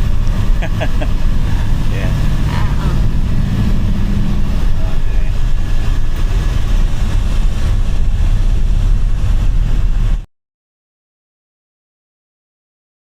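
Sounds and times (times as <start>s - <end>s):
low hum: 0.0s - 10.3s
vehicle rumble: 0.0s - 10.3s.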